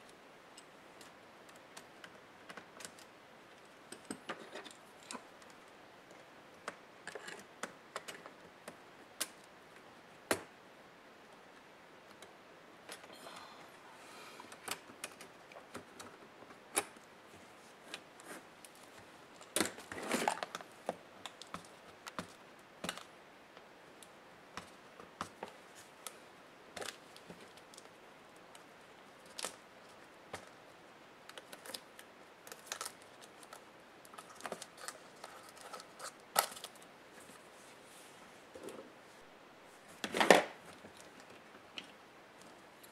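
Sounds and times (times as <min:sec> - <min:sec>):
small clicks and taps of parts: 0:00.6 - 0:10.5, 0:17.9 - 0:26.2.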